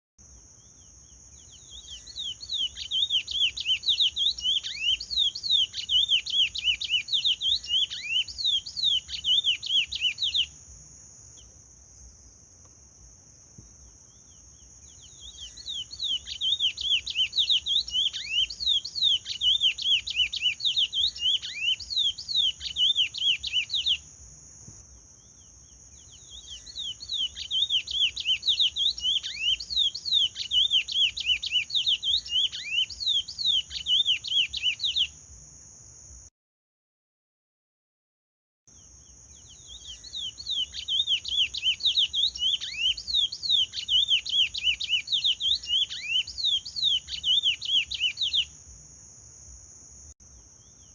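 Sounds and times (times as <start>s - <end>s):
finch singing whistled notes: 0.6s - 10.6s, 14.1s - 24.1s, 25.2s - 35.2s, 39.3s - 48.6s.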